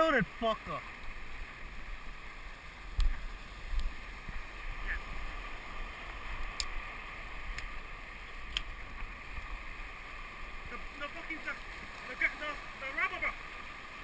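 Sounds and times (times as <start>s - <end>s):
ocean water on rocky shore: 0.0s - 14.0s
faint clicks: 7.5s - 7.8s, 8.5s - 9.1s.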